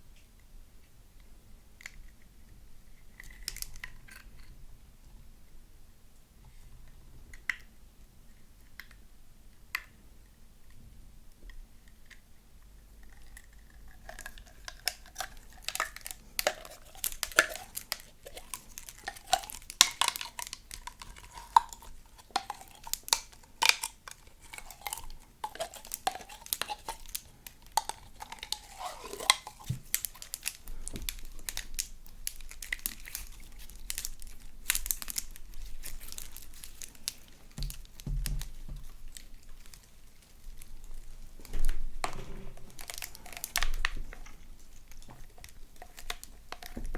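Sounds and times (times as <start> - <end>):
slime popping and crackling: 13.2 - 46.9.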